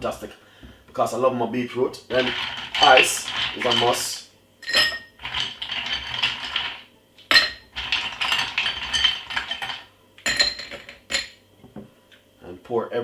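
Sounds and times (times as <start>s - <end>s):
ice cubes clinking into glass: 2.1s - 11.4s.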